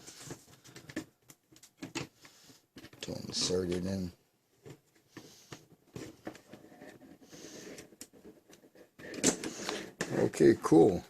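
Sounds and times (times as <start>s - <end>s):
plastic parts clicking and tapping: 0.2s - 4.0s, 7.6s - 10.2s.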